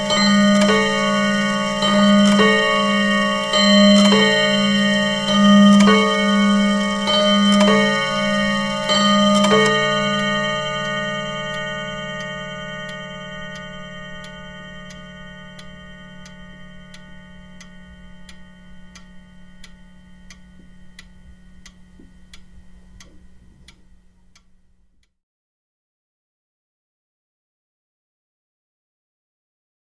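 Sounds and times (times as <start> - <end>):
clock chime ringing: 0.0 - 22.9
wall clock ticking: 0.0 - 25.1.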